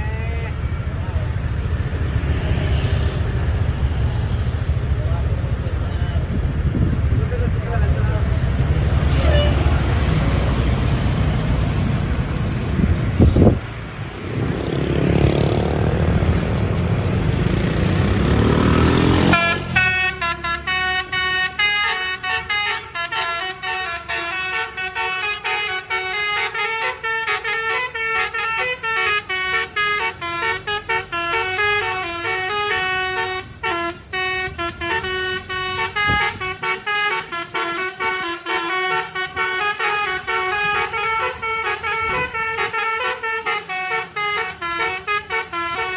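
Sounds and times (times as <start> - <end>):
vehicle engine and road noise: 0.0 - 45.9
bus musical horn tune: 8.9 - 11.5, 19.1 - 45.9
sharp thump: 36.0 - 36.5.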